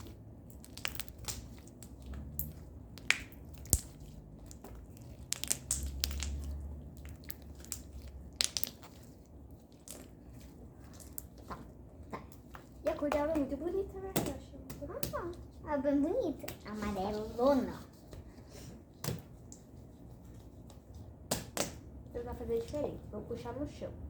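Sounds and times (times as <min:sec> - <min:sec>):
slime crackling and popping: 0:00.0 - 0:15.3.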